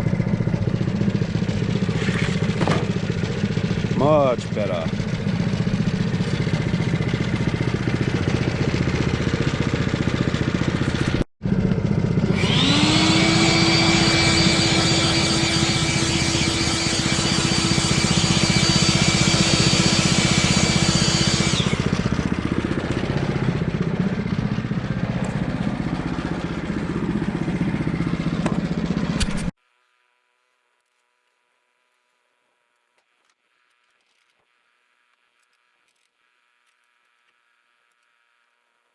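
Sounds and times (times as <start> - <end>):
gas engine running: 0.0 - 29.5
band saw blade cutting log: 1.8 - 3.4, 12.2 - 23.2.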